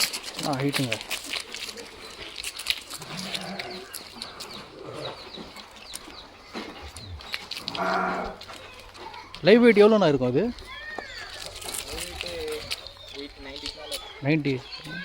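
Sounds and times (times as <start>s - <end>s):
sheep bleating: 7.7s - 8.4s.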